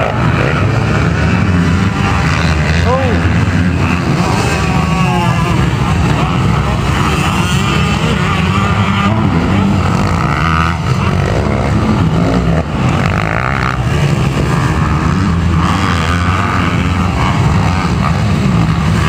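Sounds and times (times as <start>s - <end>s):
dirt bike engines revving: 0.0s - 19.0s.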